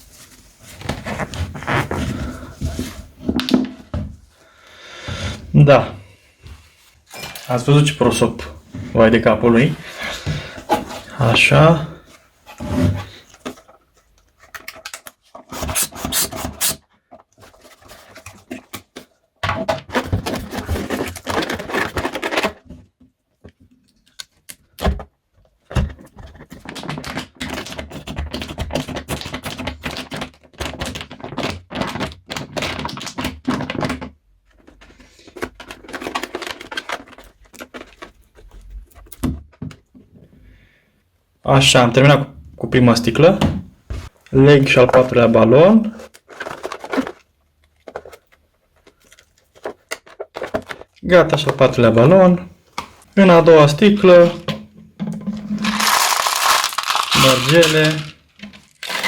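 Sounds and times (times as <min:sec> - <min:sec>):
plastic bottle crackling: 0:55.0 - 0:59.0.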